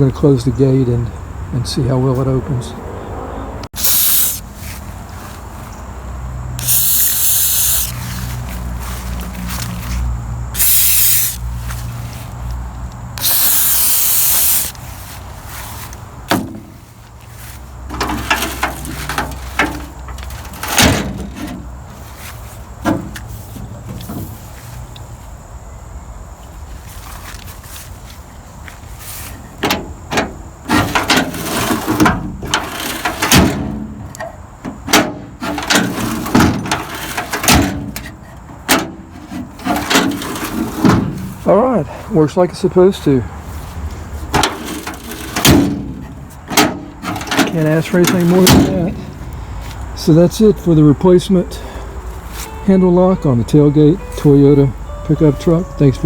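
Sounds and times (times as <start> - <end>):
aerosol spray burst: 3.8 - 4.4, 6.6 - 8.0, 10.6 - 11.4, 13.2 - 14.8.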